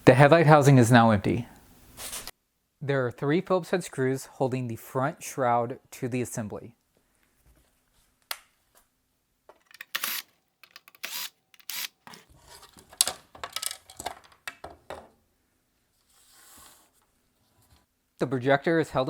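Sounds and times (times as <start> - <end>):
plastic parts and screws clicking: 9.6 - 12.3, 12.9 - 14.6.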